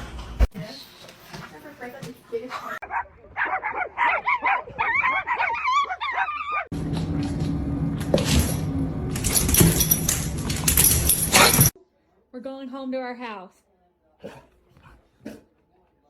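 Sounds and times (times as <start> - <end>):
dog whining and yipping: 3.7 - 6.7
low hum: 6.7 - 11.7.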